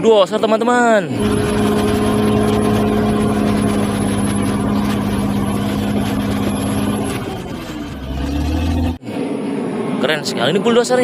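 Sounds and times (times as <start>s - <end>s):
bulldozer engine running: 1.1s - 9.0s.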